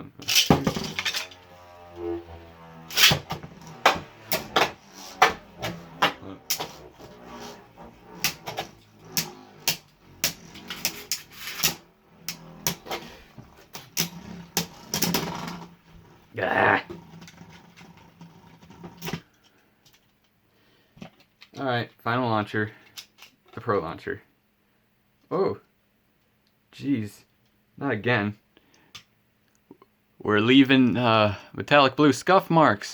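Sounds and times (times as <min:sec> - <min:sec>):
spinning tops clacking: 0:00.2 - 0:01.6, 0:08.2 - 0:13.1.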